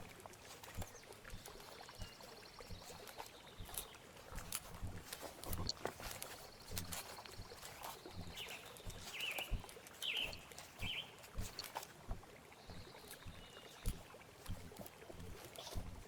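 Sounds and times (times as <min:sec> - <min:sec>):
footsteps on rough trail: 0:00.0 - 0:16.0
bird chirping: 0:05.4 - 0:11.5, 0:12.6 - 0:13.9.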